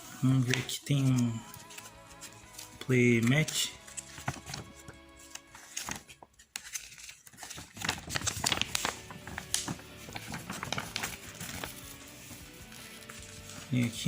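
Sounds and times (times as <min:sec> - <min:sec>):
background music: 0:00.0 - 0:14.0
plastic packaging crinkling: 0:01.6 - 0:14.0.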